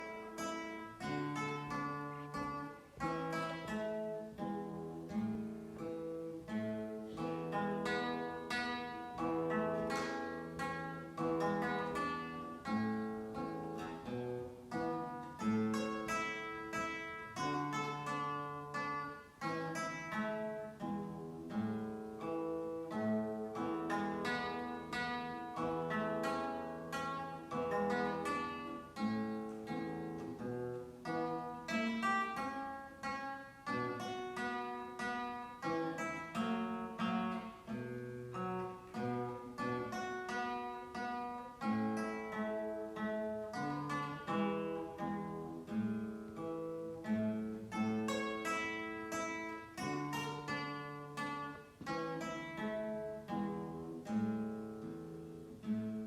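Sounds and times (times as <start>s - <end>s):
fingerstyle guitar: 0.0s - 56.0s.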